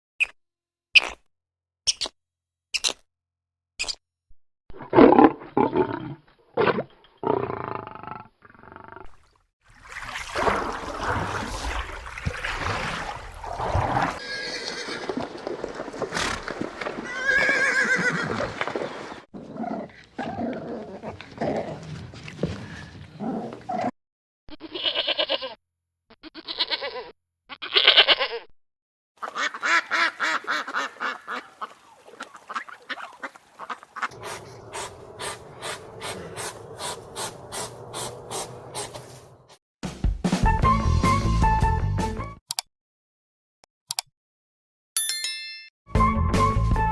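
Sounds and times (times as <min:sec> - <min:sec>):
farm animal calls: 0:32.5 - 0:39.0.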